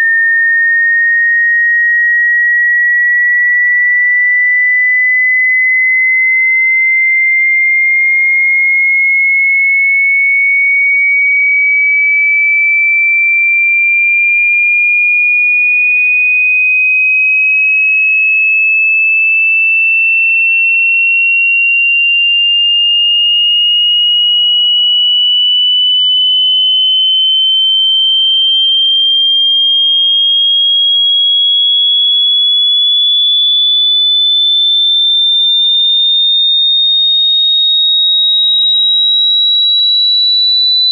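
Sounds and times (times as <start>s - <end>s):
sine tone sweeping upward: 23.0s - 40.9s.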